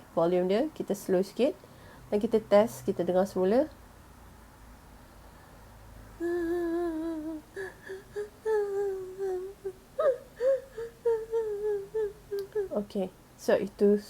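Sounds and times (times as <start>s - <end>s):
woman crying: 6.2s - 12.8s.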